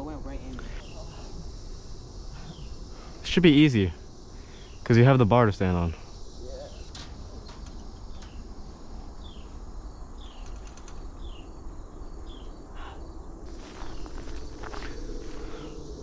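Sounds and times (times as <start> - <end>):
crickets and insects calling: 0.0 - 16.0
rustling background: 5.9 - 12.6, 13.4 - 15.7.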